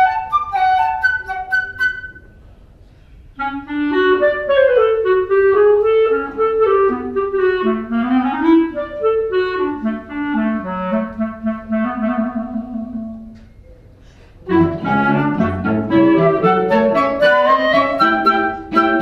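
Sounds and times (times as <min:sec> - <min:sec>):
chamber ensemble playing classical music: 0:03.5 - 0:13.4, 0:14.4 - 0:19.0.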